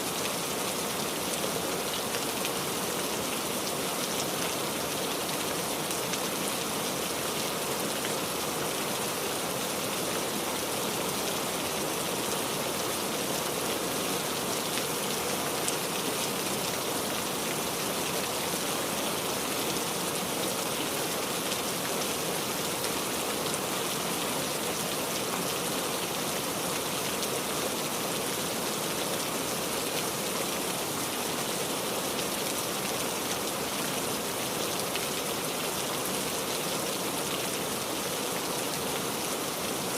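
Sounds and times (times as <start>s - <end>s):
rain pattering: 0.1s - 39.9s.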